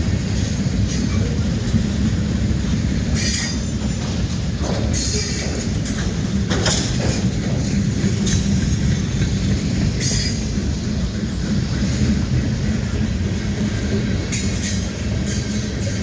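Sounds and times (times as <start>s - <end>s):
train cars rumbling by: 0.0s - 16.0s
train wheels squealing: 3.1s - 4.0s, 4.8s - 6.0s, 8.2s - 11.1s, 14.3s - 16.0s.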